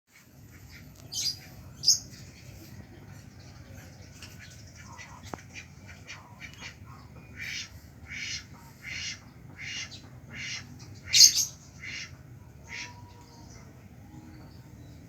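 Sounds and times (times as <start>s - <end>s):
bird raspy quacking calls: 4.3s - 13.2s.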